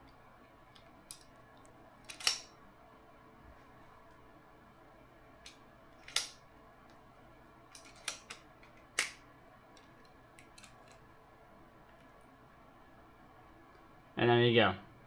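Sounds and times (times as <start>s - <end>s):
metallic clicks of clamp parts: 2.1s - 2.5s, 5.5s - 6.4s, 7.7s - 9.2s.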